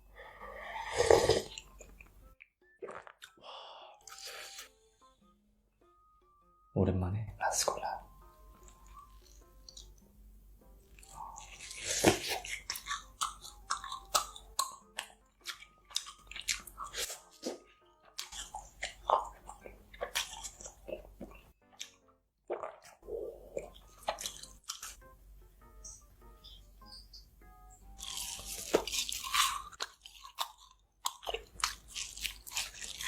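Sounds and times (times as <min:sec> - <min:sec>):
crunchy food chewing: 0:10.9 - 0:25.0, 0:27.9 - 0:33.0.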